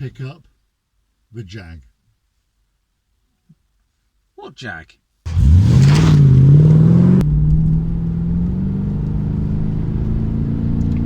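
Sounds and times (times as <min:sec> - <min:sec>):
car engine starting and revving: 0:05.3 - 0:11.0.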